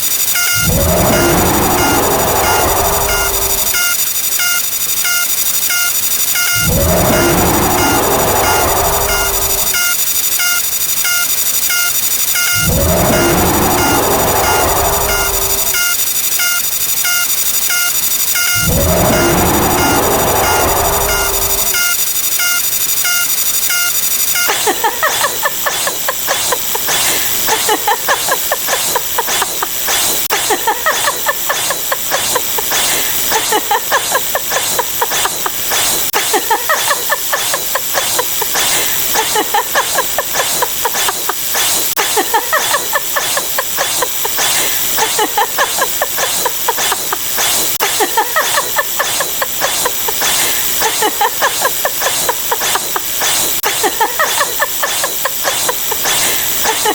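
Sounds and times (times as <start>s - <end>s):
dense hissing sound effects: 0.0s - 4.4s, 6.6s - 10.8s, 12.5s - 17.0s, 18.6s - 23.7s, 24.9s - 56.9s
short squealing tones: 0.0s - 24.5s
repeated beeps: 0.0s - 28.2s.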